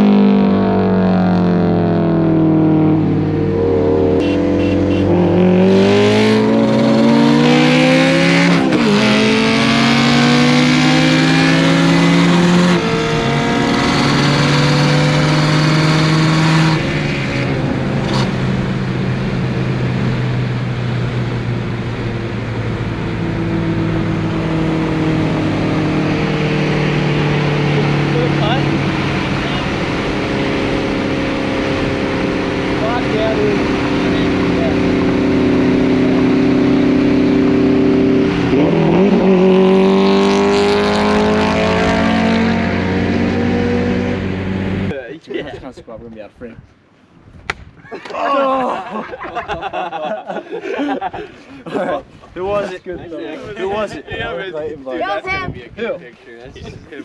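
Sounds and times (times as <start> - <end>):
car engine and exhaust revving: 0.0 - 45.0.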